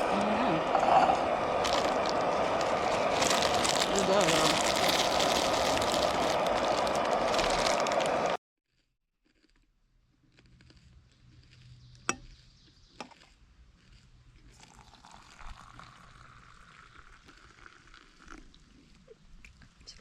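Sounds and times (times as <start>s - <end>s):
liquid being poured: 14.5s - 19.6s.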